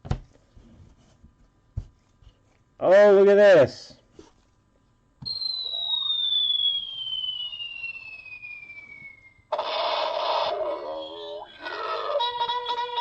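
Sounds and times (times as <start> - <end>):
whistling tones gliding: 5.3 - 9.5.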